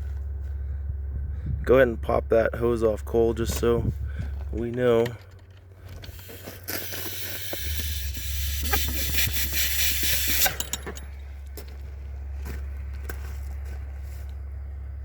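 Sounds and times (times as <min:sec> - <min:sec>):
vacuum pump engine running: 0:05.7 - 0:11.9
air hissing: 0:06.0 - 0:10.7.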